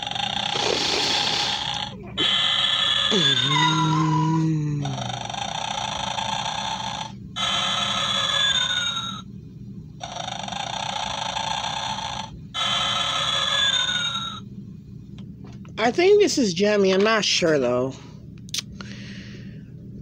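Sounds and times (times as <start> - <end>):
toy playing recorded snoring: 0.0 - 9.3, 10.0 - 14.4.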